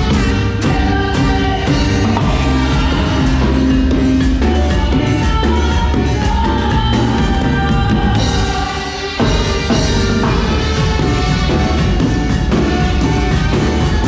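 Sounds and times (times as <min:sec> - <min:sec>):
drum kit beat: 0:00.0 - 0:14.0
live band music: 0:00.0 - 0:14.0.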